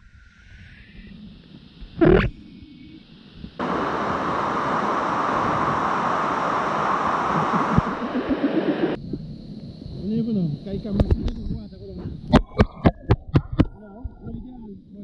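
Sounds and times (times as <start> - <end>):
waterfall rushing: 3.6 - 9.0.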